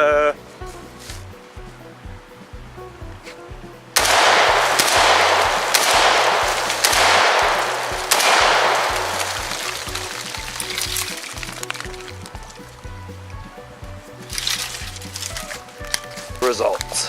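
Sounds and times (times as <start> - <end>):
background music: 0.0 - 17.0
rifle shots echoing: 4.0 - 11.3.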